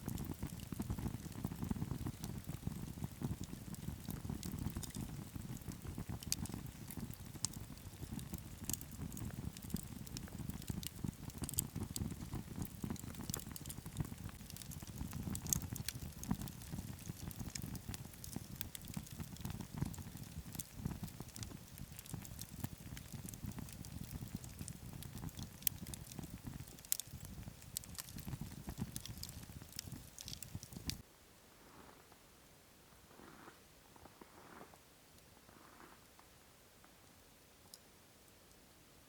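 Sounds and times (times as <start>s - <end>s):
firewood crackling and popping: 0.0s - 31.1s
rush of flames: 0.1s - 31.0s.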